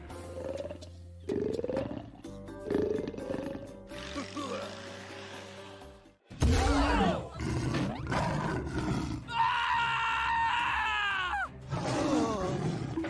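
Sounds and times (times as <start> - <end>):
music: 0.0 - 13.0
animal roar and growl effects: 7.0 - 9.3, 11.7 - 13.0.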